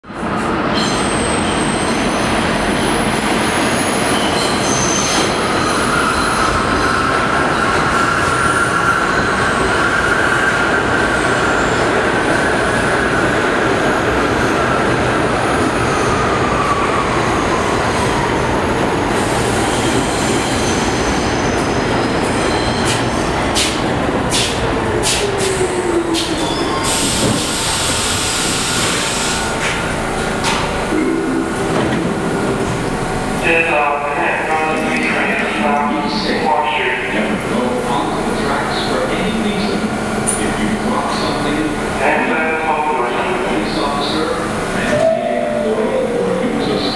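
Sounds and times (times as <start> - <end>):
train wheels rumbling on rails: 0.0 - 45.0
falling tone: 30.0 - 34.2.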